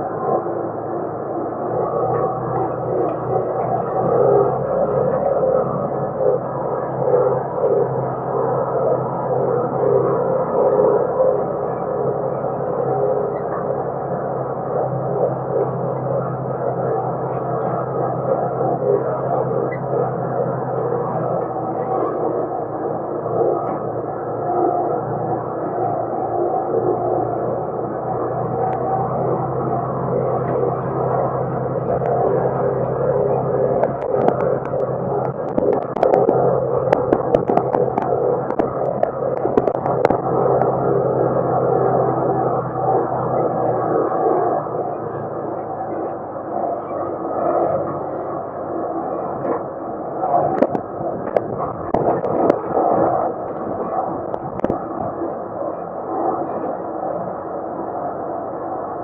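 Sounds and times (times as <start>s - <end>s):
tractor engine drone: 0.0s - 59.0s
tractor engine running: 29.6s - 42.8s
sharp clicks: 33.7s - 40.8s.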